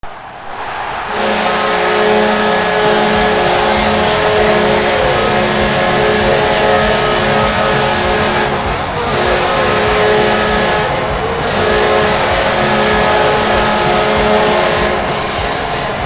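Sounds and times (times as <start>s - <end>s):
arena crowd cheering: 0.0s - 16.0s
hockey goal horn: 1.1s - 16.0s.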